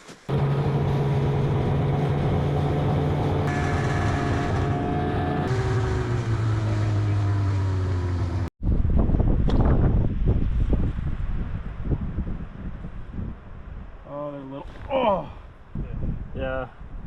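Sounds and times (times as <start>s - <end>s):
small engine running: 0.3s - 8.5s.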